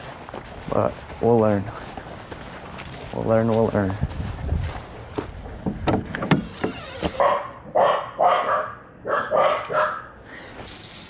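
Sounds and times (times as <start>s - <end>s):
dog barking: 7.2s - 10.1s.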